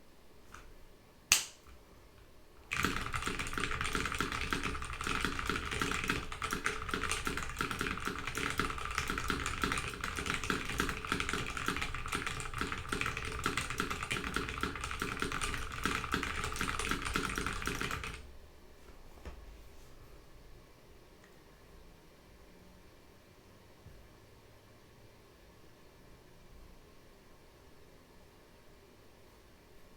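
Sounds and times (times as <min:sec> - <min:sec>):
single sharp click: 0:01.3 - 0:01.7
fast typing on mechanical keyboard: 0:02.6 - 0:18.3.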